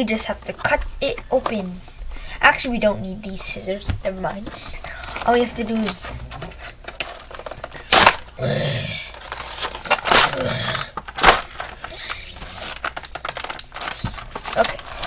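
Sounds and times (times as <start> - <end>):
packaging rustling and crinkling: 3.6 - 15.0.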